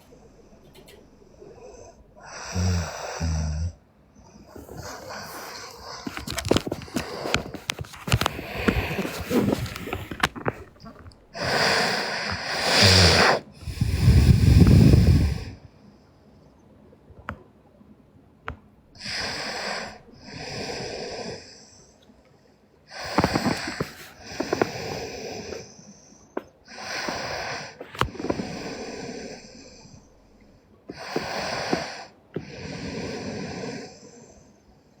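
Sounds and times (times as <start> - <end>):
girl snoring: 1.6 - 3.8, 4.4 - 15.6, 23.0 - 25.7.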